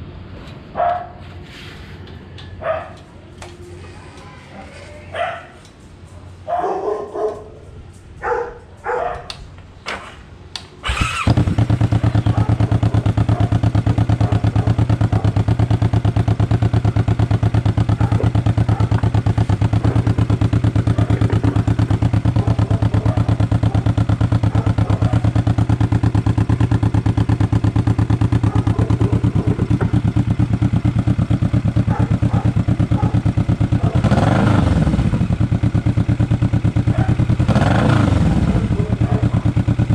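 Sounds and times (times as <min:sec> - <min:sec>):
dog barking: 0:00.8 - 0:01.2, 0:02.6 - 0:03.0, 0:04.6 - 0:05.6, 0:06.2 - 0:09.4, 0:12.1 - 0:15.4, 0:17.8 - 0:25.7, 0:28.4 - 0:30.0, 0:31.8 - 0:34.4, 0:36.9 - 0:37.3, 0:38.6 - 0:39.7
motorcycle engine idling: 0:10.5 - 0:39.9.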